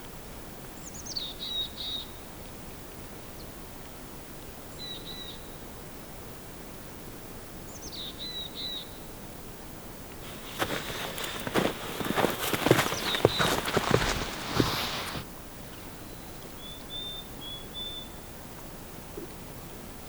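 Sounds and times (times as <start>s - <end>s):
footsteps crunching in snow: 10.2s - 15.2s.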